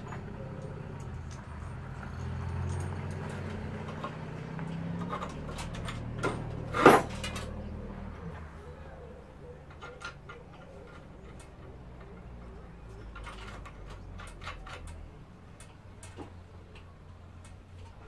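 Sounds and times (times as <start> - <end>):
light wooden clicks: 9.4 - 18.0.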